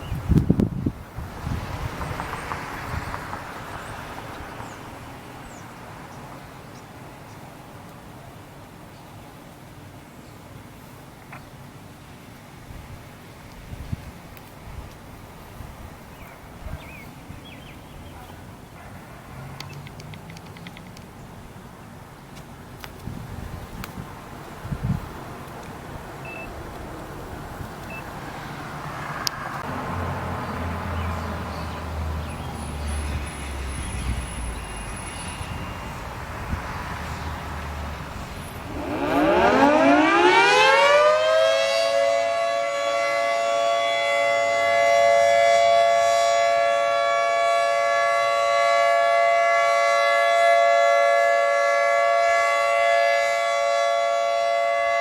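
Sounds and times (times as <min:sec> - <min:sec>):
wind rumble: 0:00.0 - 0:05.5, 0:23.0 - 0:40.7
low traffic rumble: 0:00.0 - 0:53.8
two-tone warning siren: 0:32.6 - 0:55.0.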